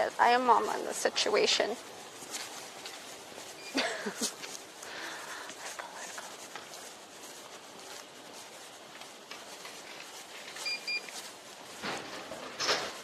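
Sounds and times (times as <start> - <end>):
low background noise: 0.0 - 13.0
noisy scuffs: 0.0 - 13.0
short electronic beeps: 10.6 - 11.1.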